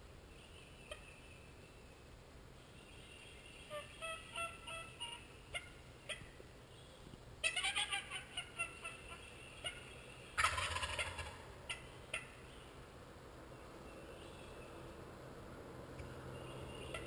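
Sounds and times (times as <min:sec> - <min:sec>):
turkey gobbling: 0:03.7 - 0:06.3, 0:07.4 - 0:12.4.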